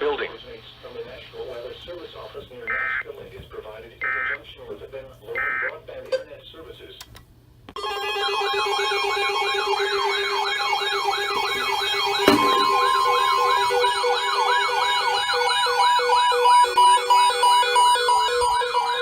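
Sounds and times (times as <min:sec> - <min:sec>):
electronic siren yelping: 0:07.8 - 0:19.0.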